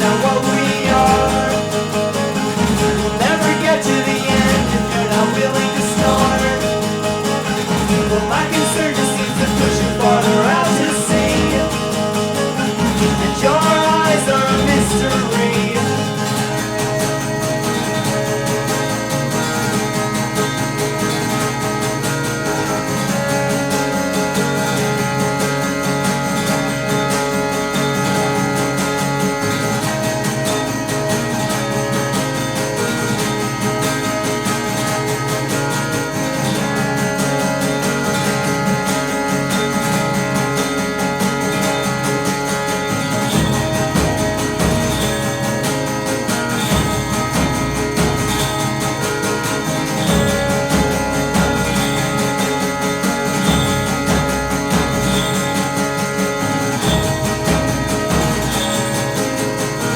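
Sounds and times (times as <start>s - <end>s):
instrumental guitar music: 0.0s - 59.9s
deep bass notes: 43.2s - 52.4s.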